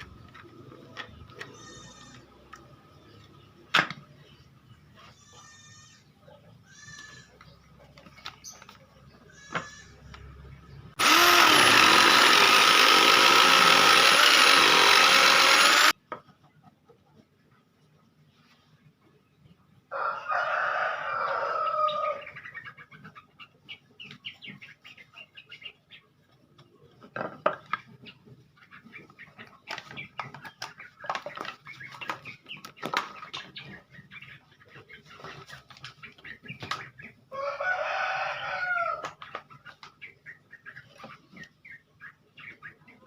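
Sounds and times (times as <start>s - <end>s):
rooster crowing: 19.9s - 22.2s, 37.3s - 39.1s.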